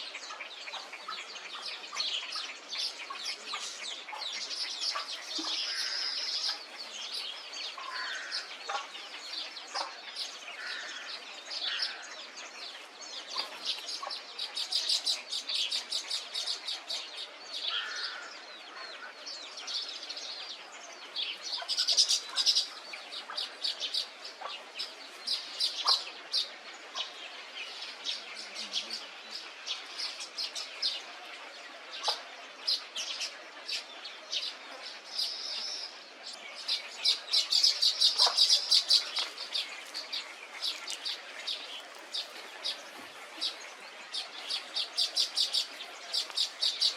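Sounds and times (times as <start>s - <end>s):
high bird chirping: 35.2s - 46.9s.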